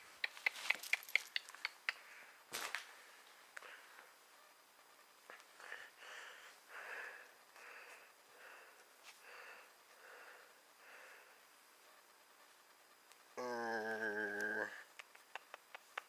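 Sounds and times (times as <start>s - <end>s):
soft breathing: 1.9s - 4.2s, 5.3s - 12.0s.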